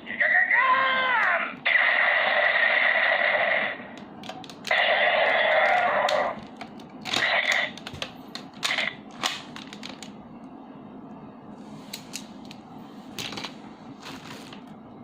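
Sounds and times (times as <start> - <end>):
toy mechanism clicks: 4.0 - 8.9.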